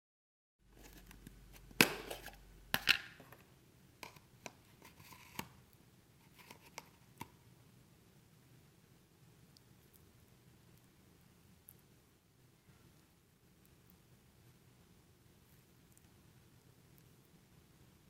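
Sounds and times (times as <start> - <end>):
rustling: 3.2 - 7.3.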